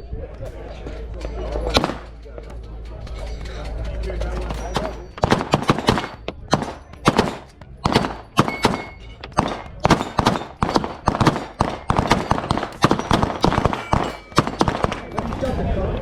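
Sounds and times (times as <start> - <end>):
pistol shots with echo: 1.7 - 2.2, 4.5 - 15.6.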